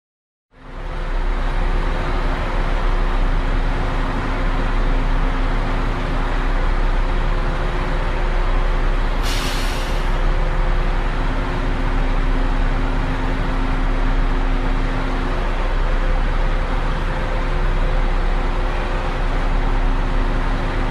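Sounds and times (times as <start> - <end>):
bus engines idling: 0.6 - 20.9
traffic noise: 0.6 - 20.9
air brakes hiss: 9.2 - 10.2.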